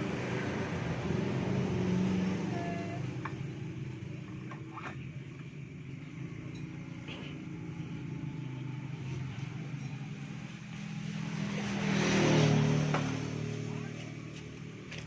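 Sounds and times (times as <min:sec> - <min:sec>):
engine humming: 0:00.0 - 0:15.0
faint metallic clinks: 0:06.4 - 0:07.4, 0:09.6 - 0:10.6.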